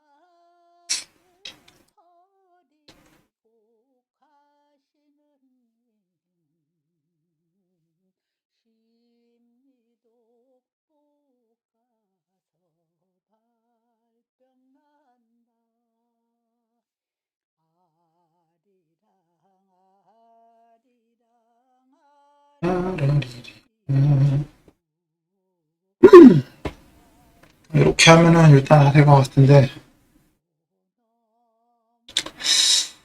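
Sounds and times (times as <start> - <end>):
sudden loud vocal sound: 22.6 - 24.5, 26.0 - 26.5, 27.8 - 29.8.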